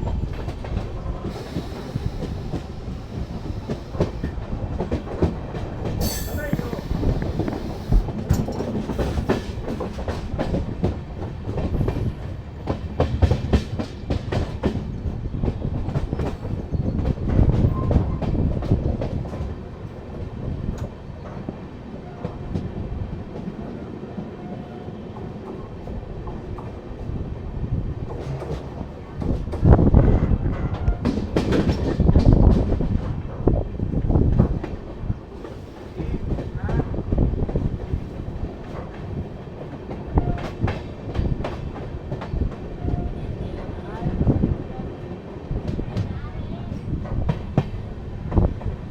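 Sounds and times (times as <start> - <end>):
train wheels clicking over rail joints: 0.0 - 19.6, 28.0 - 33.5
train rumble: 0.0 - 48.9.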